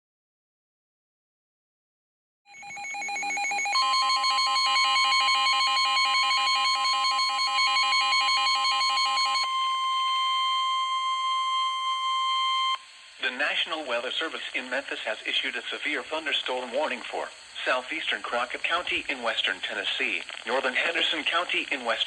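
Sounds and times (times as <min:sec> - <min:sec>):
pulsing electronic alarm: 0:02.5 - 0:12.8
steady warning alarm tone: 0:02.5 - 0:12.8.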